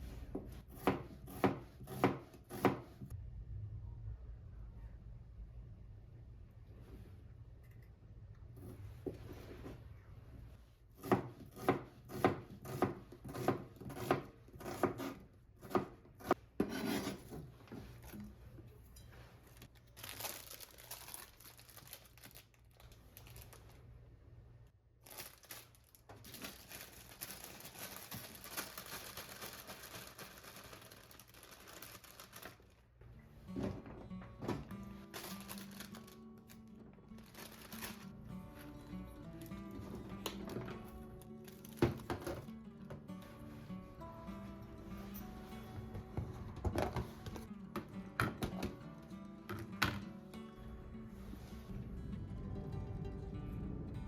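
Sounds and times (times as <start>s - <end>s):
knife chopping on wooden board: 0.7s - 2.9s, 11.0s - 17.1s
vegetables rubbing and rustling: 19.1s - 23.8s, 25.0s - 32.9s, 34.9s - 41.8s.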